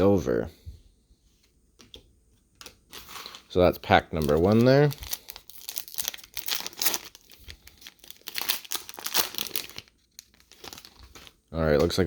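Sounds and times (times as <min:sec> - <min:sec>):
cellophane wrapper crinkling and tearing: 0:02.9 - 0:12.0.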